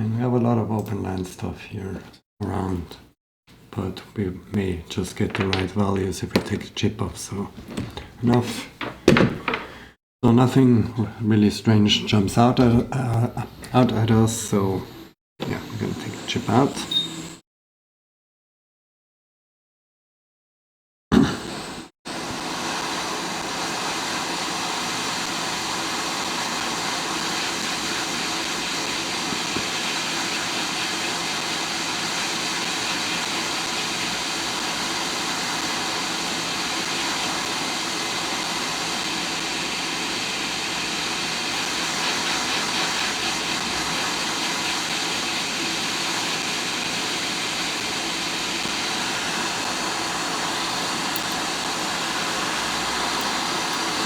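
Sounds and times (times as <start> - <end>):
hot air station blowing: 7.2 - 10.0, 21.2 - 54.0.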